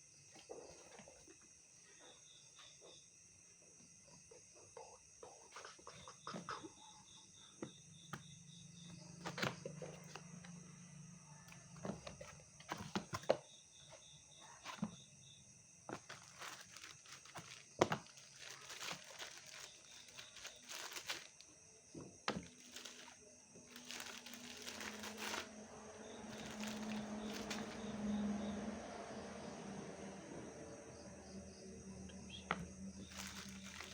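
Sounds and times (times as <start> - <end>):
packaging crinkling and rustling: 15.9 - 21.5, 22.3 - 25.5, 26.2 - 28.0, 33.0 - 33.9.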